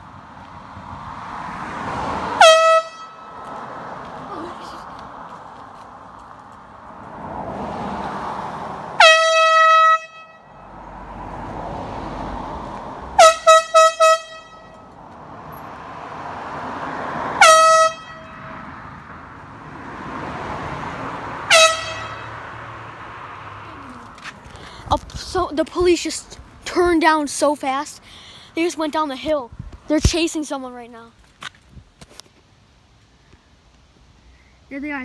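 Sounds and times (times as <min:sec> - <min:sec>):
passing vehicles: 0:00.0 - 0:35.0
air horn blasts: 0:02.4 - 0:03.4, 0:09.0 - 0:10.7, 0:13.2 - 0:14.9, 0:17.4 - 0:18.6, 0:21.4 - 0:22.5.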